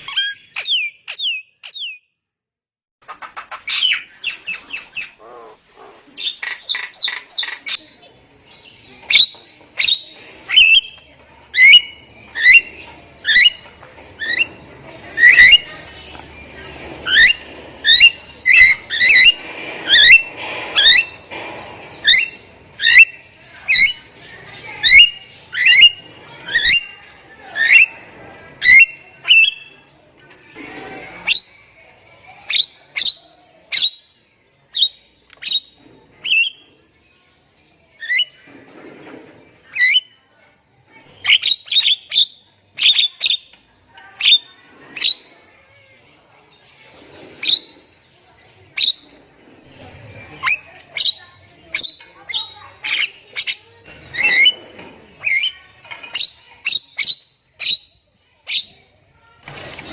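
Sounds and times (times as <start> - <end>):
bird whistling and squawking: 15.2 - 15.8, 17.0 - 21.3, 22.0 - 24.0.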